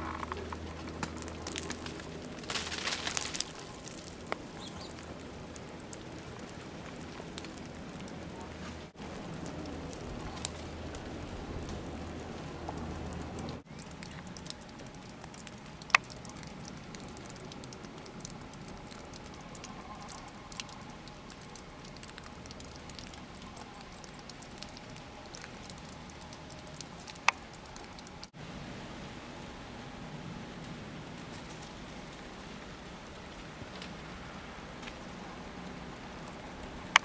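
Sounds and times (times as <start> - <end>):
falling snow pattering: 0.0 - 28.4, 30.6 - 37.0
small sharp ticks: 12.6 - 28.3, 36.2 - 37.0.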